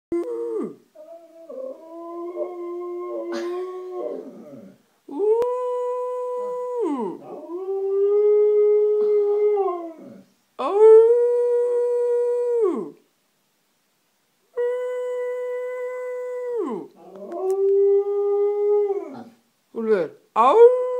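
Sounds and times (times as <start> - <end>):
dog howling: 0.2 - 12.9.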